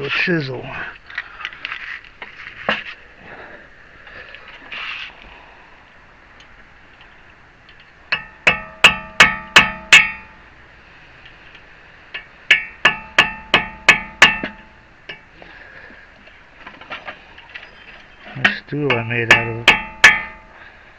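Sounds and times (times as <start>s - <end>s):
hammer striking metal chisel: 8.1s - 10.4s, 12.2s - 15.2s, 18.4s - 20.6s.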